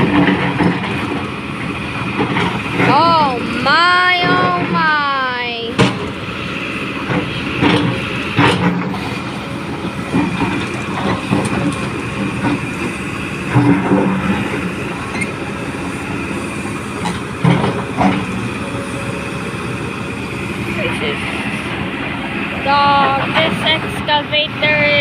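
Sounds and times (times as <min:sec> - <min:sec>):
metal clanks and knocks: 0:00.0 - 0:01.3, 0:02.2 - 0:02.9, 0:07.0 - 0:09.1, 0:09.7 - 0:21.4
diesel engine running: 0:00.0 - 0:25.0.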